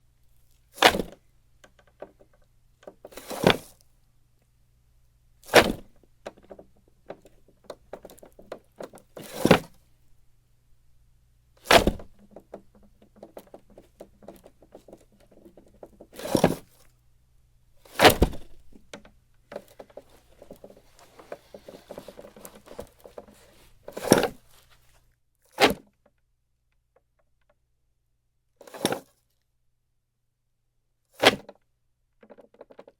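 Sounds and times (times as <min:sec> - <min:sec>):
wooden drawer sliding: 0:16.1 - 0:16.7, 0:19.5 - 0:24.8.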